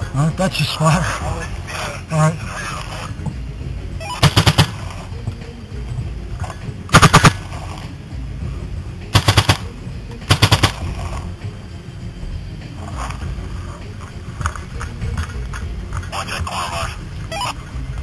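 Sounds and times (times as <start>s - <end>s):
paintball marker firing rapid shots: 4.2s - 4.8s, 6.9s - 7.4s, 9.2s - 9.7s, 10.3s - 10.9s.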